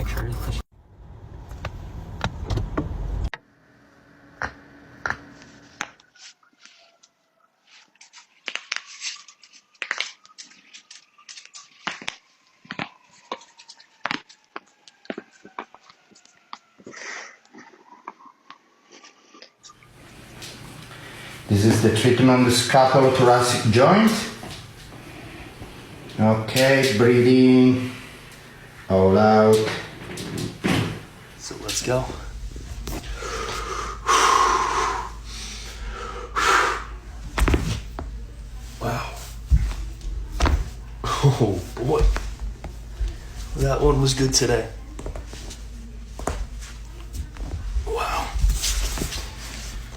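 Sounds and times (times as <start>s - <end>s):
person breathing heavily: 33.0s - 37.0s.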